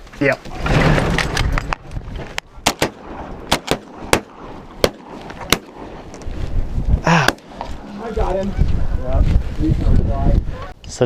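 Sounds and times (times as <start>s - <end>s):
shotgun blasts: 2.6s - 6.2s, 7.2s - 7.6s.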